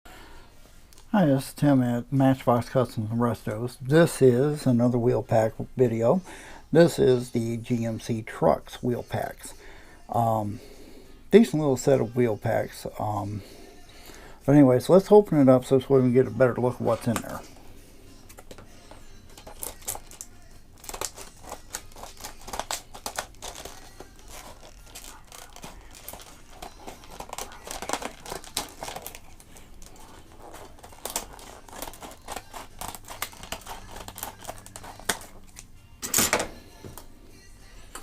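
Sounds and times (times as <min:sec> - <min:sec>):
packaging tearing and crinkling: 0:19.3 - 0:35.7.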